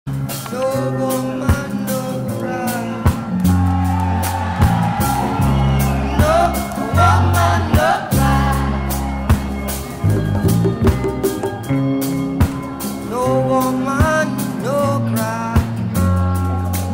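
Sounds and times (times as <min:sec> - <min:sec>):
music with drum beat and bass: 0:00.1 - 0:16.9.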